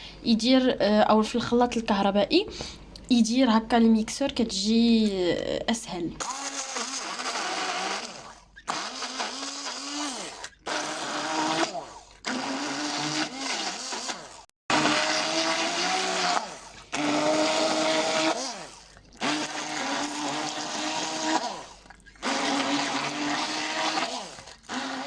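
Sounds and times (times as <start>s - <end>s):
electric hand blender grinding: 6.2s - 25.0s.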